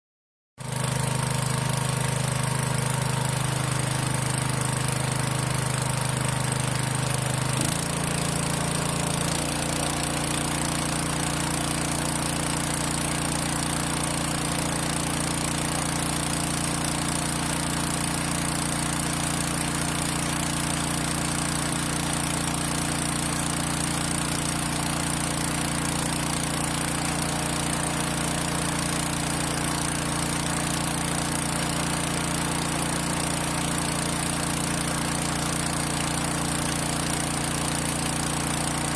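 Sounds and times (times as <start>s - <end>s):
diesel engine running: 0.6s - 14.2s.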